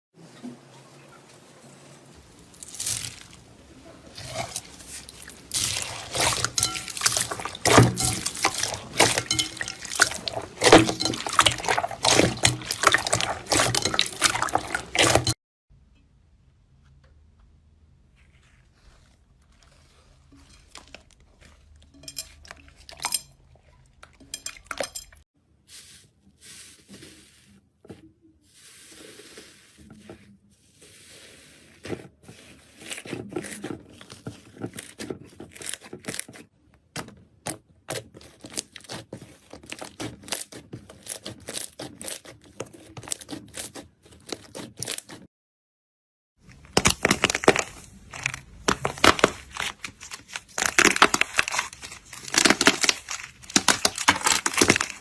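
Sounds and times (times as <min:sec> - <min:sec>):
slime squishing and popping: 0:46.5 - 0:55.0.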